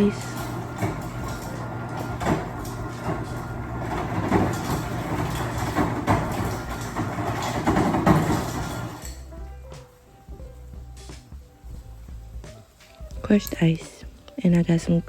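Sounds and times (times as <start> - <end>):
ice dispenser crushing ice: 0.0 - 9.2
ice clattering into a cup: 3.1 - 9.1.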